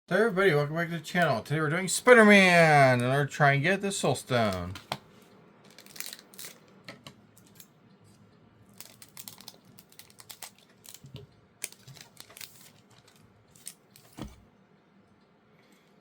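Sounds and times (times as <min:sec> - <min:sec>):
foil wrapper crinkling: 0:05.6 - 0:06.8, 0:08.7 - 0:14.2.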